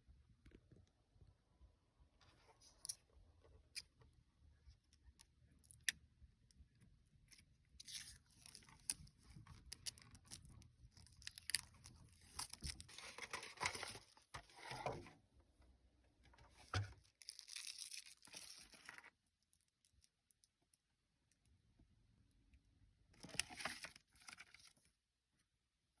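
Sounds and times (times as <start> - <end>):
packaging rustling and tearing: 11.0 - 14.8, 17.2 - 19.0.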